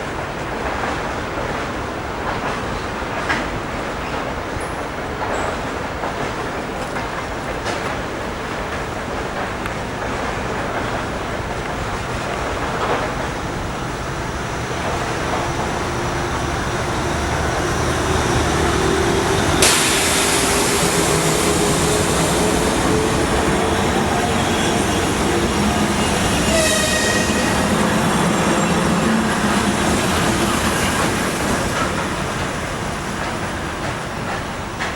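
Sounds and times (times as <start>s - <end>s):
high wheel squeal: 17.4s - 32.0s.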